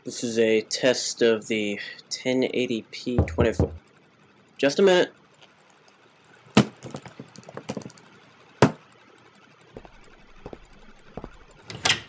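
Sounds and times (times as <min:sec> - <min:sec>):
sharp knocks: 0:03.2 - 0:03.8
faint ticking and crackling: 0:03.8 - 0:12.0.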